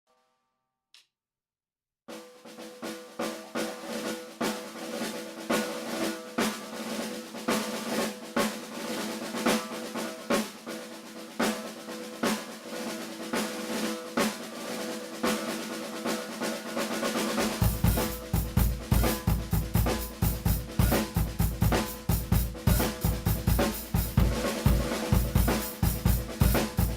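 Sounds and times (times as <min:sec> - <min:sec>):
snare drum strokes: 0:02.1 - 0:26.9
bass drum: 0:17.4 - 0:26.9.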